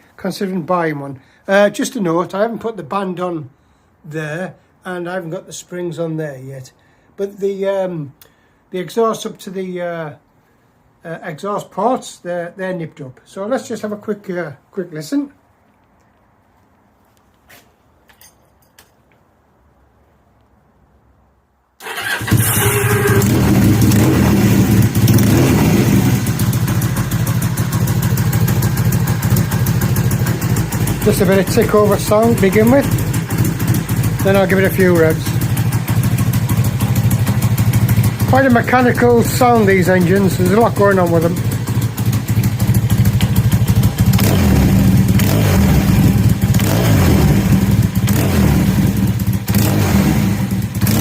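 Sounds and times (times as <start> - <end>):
motorcycle engine idling: 21.9 - 49.6.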